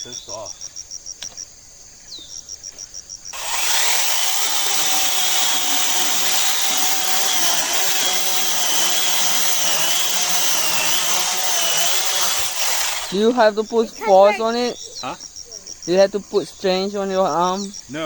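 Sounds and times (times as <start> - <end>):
electric chainsaw cutting log: 3.4 - 13.2.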